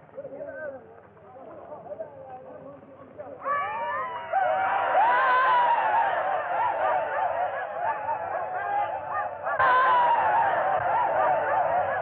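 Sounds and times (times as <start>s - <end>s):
crowd of men yelling and whooping: 3.4s - 12.0s.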